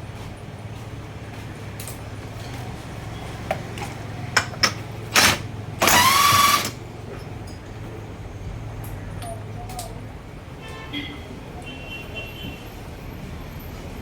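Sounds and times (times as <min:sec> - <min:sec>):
impact wrench bursts: 0:04.4 - 0:06.8.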